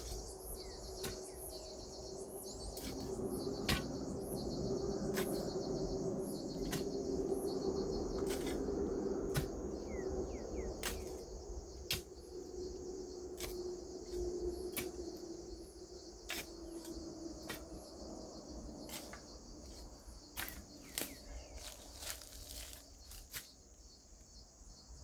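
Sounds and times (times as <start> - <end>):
insect chorus: 0.0 - 25.0
bird chirps: 9.8 - 11.2.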